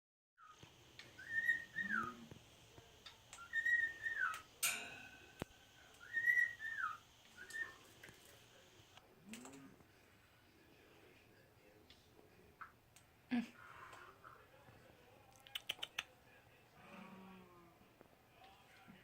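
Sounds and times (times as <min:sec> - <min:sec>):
cockatiel whistling: 0:01.2 - 0:02.2, 0:03.4 - 0:04.4, 0:06.0 - 0:07.8.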